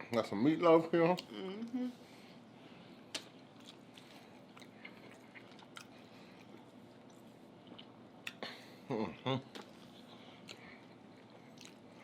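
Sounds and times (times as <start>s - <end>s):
chewing food: 3.1s - 8.5s, 9.5s - 12.0s.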